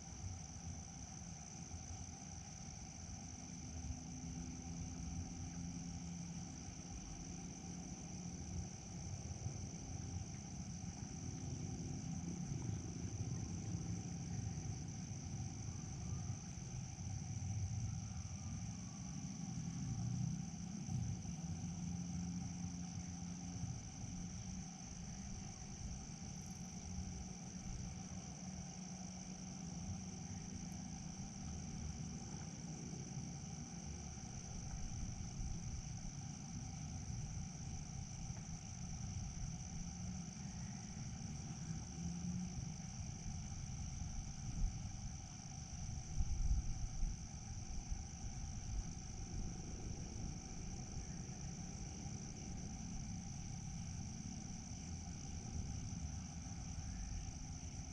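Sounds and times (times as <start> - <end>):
crickets trilling: 0.0 - 57.9.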